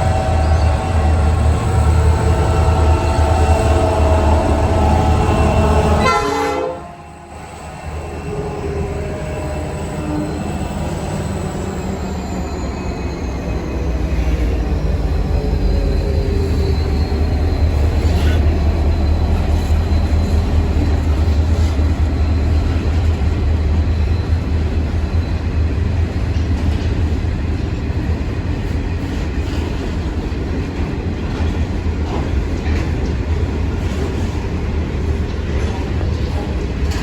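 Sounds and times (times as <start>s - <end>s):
train rumbling past: 0.0s - 37.0s.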